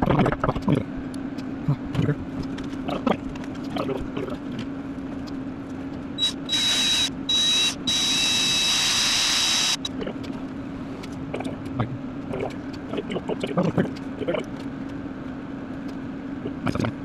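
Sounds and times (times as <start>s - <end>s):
steady low hum: 0.0s - 17.0s
power drill whining: 6.2s - 9.9s.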